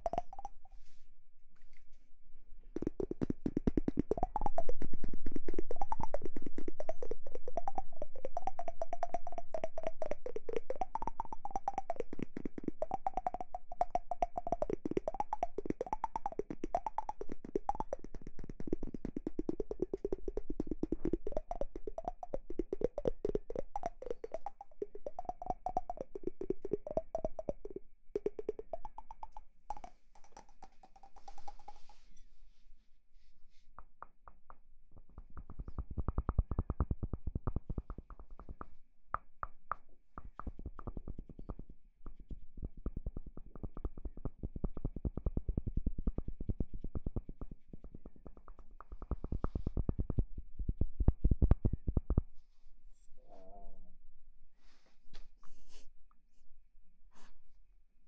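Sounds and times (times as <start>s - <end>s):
fast ringing tapping: 0.0s - 0.6s, 2.8s - 32.0s.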